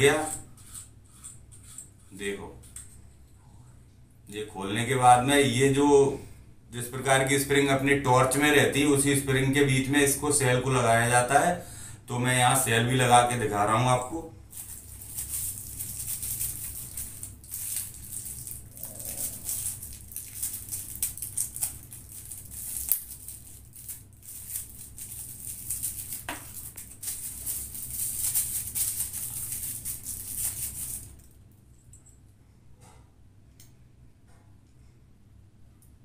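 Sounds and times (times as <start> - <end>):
plastic handling scratching: 14.6 - 31.2.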